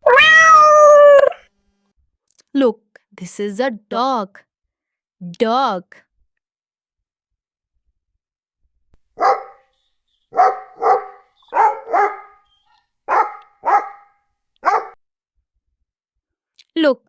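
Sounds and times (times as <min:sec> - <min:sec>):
dog barking: 0:09.2 - 0:09.7, 0:10.3 - 0:15.0.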